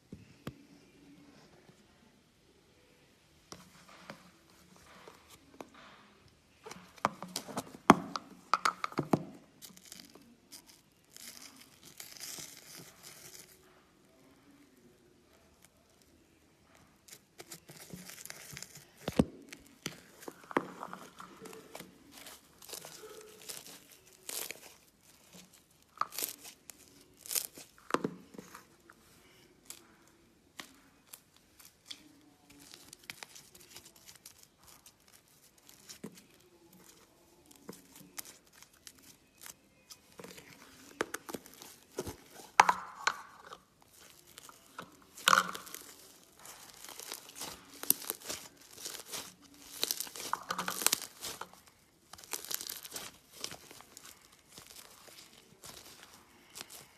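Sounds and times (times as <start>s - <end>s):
slime squeezed and stretched: 19.9s - 27.8s, 43.9s - 56.9s.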